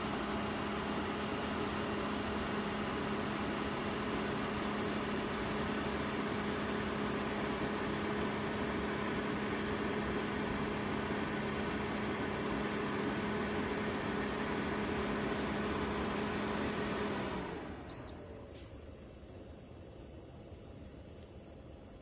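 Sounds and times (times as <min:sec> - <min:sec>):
fan motor hum: 0:00.0 - 0:22.0
fan air rushing: 0:12.5 - 0:22.0.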